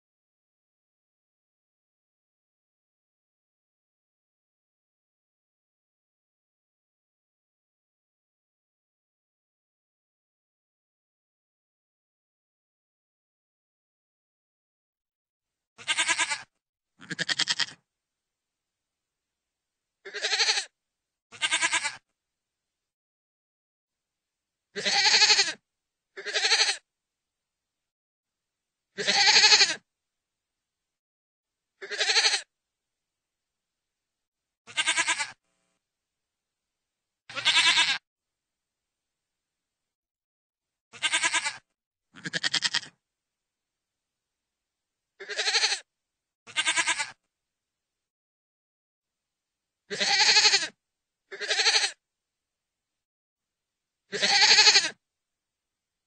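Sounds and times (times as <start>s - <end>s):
goat bleating: 15.8s - 17.8s, 20.0s - 22.1s, 24.8s - 25.6s, 26.2s - 26.9s, 29.0s - 29.8s, 31.8s - 32.5s, 34.7s - 35.4s, 37.3s - 38.0s, 40.9s - 43.0s, 45.2s - 45.9s, 46.5s - 47.2s, 49.9s - 52.0s, 54.1s - 55.0s.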